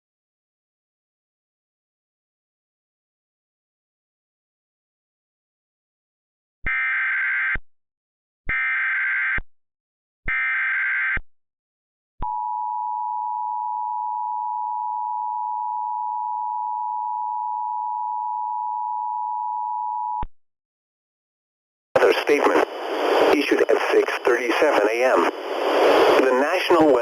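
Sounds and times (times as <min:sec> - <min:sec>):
steady attention tone: 0:22.0 - 0:27.0
warbling data bursts: 0:23.3 - 0:27.0.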